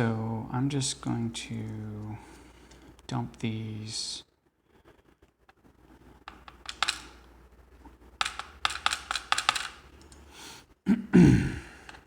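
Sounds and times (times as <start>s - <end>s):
metal pins clicking on hard surface: 6.2s - 7.3s, 8.2s - 10.3s.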